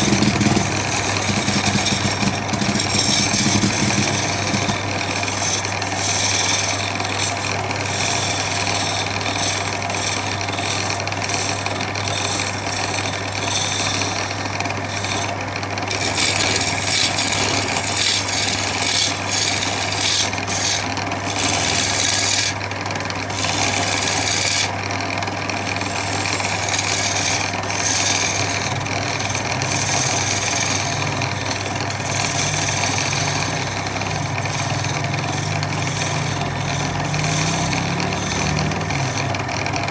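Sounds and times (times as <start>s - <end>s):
power sander scratching wood: 0.0s - 39.9s.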